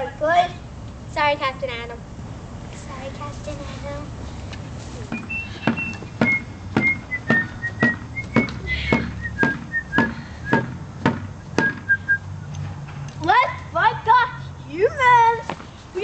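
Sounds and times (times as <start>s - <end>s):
person whistling a slow tune: 5.2s - 10.7s, 11.4s - 12.5s.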